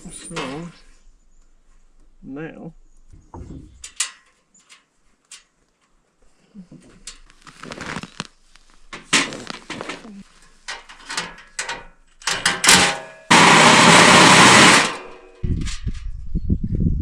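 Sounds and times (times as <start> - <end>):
metal parts and tools clattering: 3.7 - 5.4, 9.0 - 15.8
power tool running: 12.8 - 15.3.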